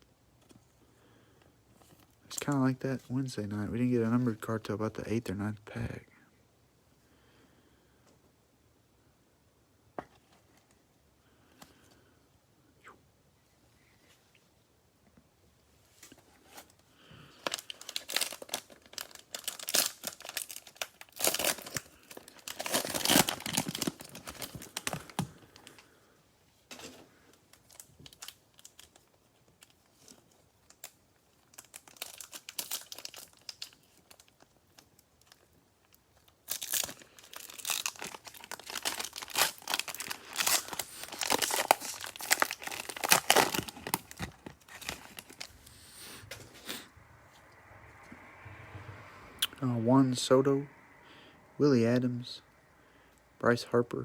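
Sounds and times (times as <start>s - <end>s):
cellophane pack crinkling: 17.3s - 25.9s, 26.7s - 45.7s.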